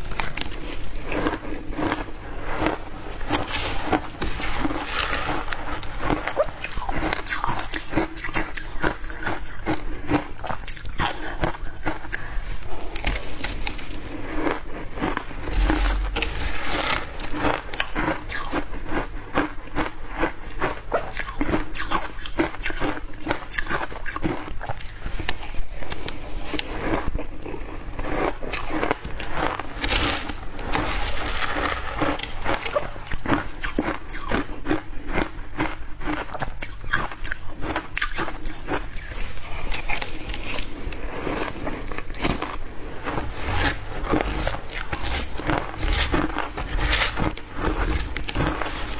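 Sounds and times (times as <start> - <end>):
ice crunching between teeth: 0.0 - 48.9.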